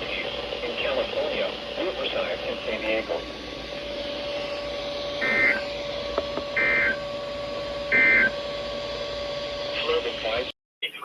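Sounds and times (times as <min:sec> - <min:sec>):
low humming tone: 0:02.4 - 0:10.3
buzzy digital data bursts: 0:04.4 - 0:05.8, 0:06.6 - 0:07.0.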